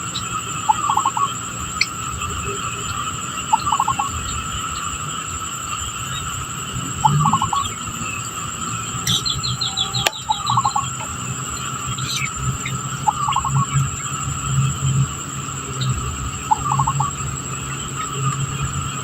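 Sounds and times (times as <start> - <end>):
insect chorus droning: 0.0 - 19.0
bird high chirps: 9.0 - 13.7, 16.4 - 17.2.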